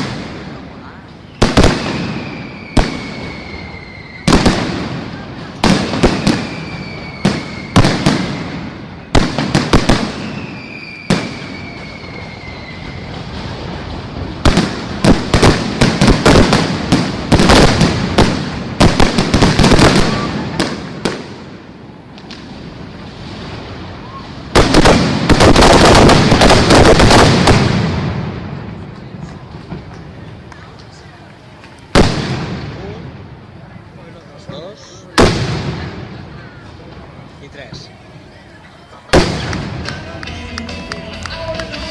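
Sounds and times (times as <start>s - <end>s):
firework bangs: 0.0s - 41.9s
firework crackling: 0.0s - 41.9s
falling firework whistles: 1.2s - 16.6s, 18.9s - 21.3s, 22.2s - 27.9s.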